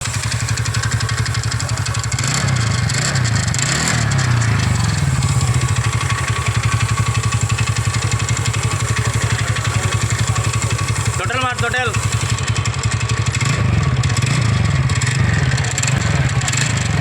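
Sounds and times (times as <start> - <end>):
scooter engine running: 0.0 - 17.0.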